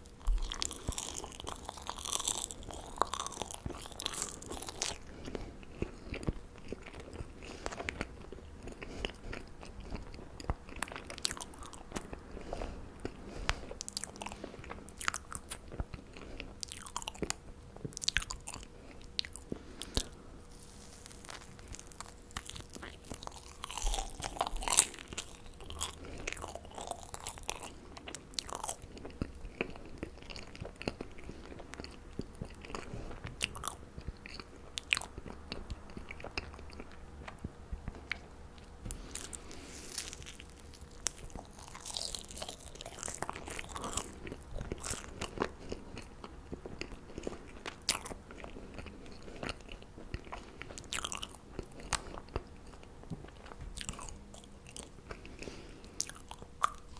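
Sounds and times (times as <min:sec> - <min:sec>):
chewing marshmallows: 0:00.0 - 0:56.9.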